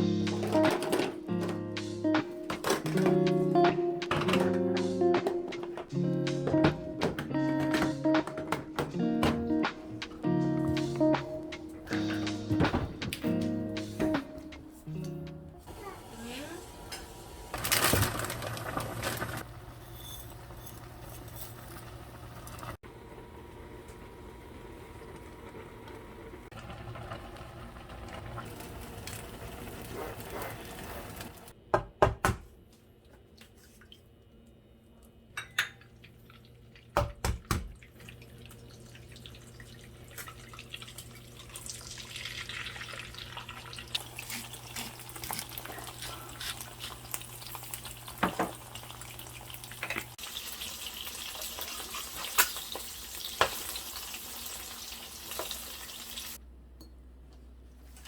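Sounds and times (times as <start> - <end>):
dishes clattering: 35.4 - 35.9.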